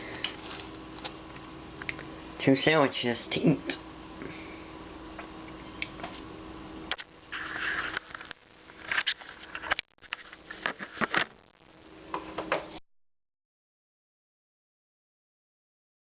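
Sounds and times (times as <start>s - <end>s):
steady low hum: 0.0s - 12.8s.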